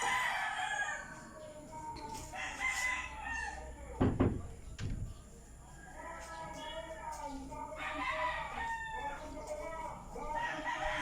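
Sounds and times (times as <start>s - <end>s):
roosters crowing: 0.0s - 4.0s, 5.0s - 11.0s
loud sharp knocks: 4.0s - 5.1s.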